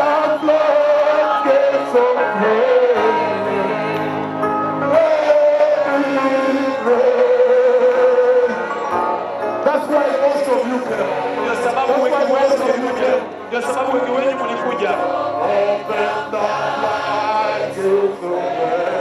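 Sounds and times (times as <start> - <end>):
instrumental backing music: 0.0 - 19.0.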